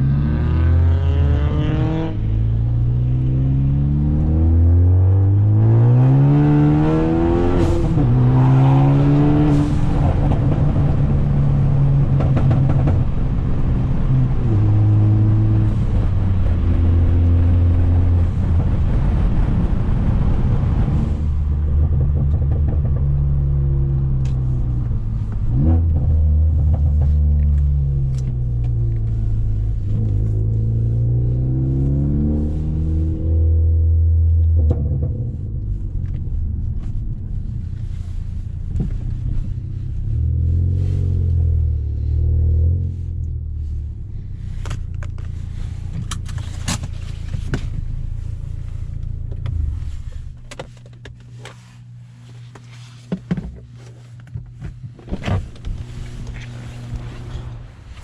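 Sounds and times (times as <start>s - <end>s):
car engine accelerating: 0.0s - 52.8s, 54.8s - 58.0s
exhaust pops: 9.3s - 30.7s, 52.5s - 58.0s.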